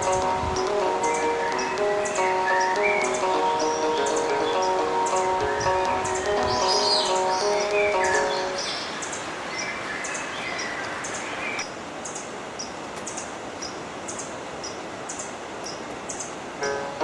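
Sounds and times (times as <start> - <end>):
held tones: 0.0 - 8.6
music: 0.0 - 8.8, 16.6 - 17.0
river water flowing: 0.0 - 17.0
high-pitched bird chirps: 0.6 - 11.6.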